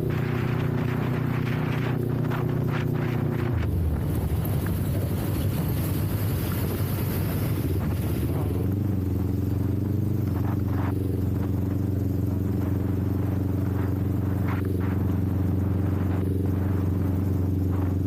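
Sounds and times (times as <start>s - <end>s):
motorcycle engine running: 0.0s - 18.0s
wind noise: 0.0s - 18.0s.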